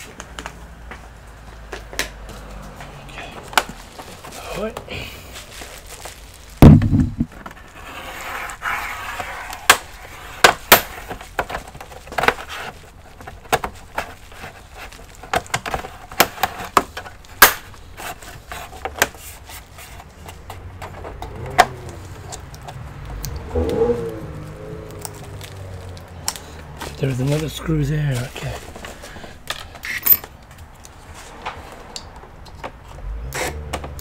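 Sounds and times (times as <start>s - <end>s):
scraping on plastic: 5.4s - 22.8s
heavy thump: 6.6s - 7.4s.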